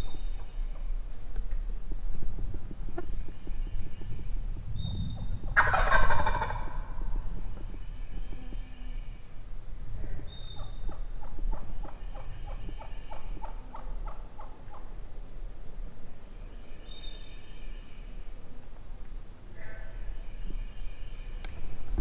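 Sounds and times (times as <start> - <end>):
turkey yelps: 5.5 - 6.8.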